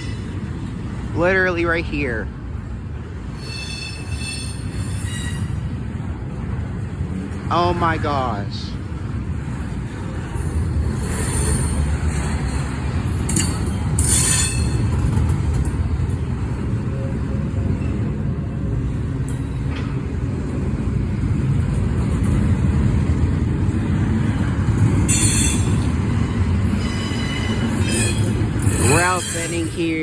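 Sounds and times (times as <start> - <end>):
train wheels squealing: 0.0 - 0.5, 3.2 - 5.8, 10.4 - 15.3, 24.4 - 30.0
freight train wheels rumbling: 0.0 - 30.0.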